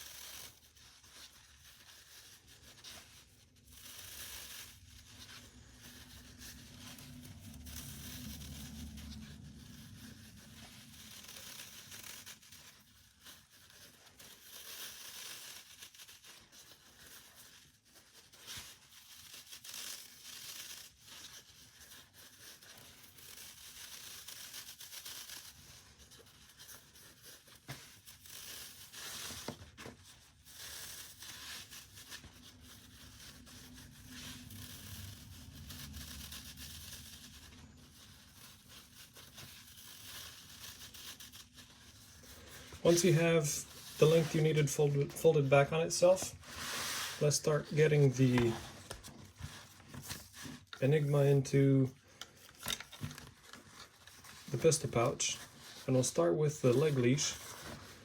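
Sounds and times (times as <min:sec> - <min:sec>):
hook-and-loop ripping: 0:00.0 - 0:58.0
fabric rustling: 0:41.2 - 0:51.2.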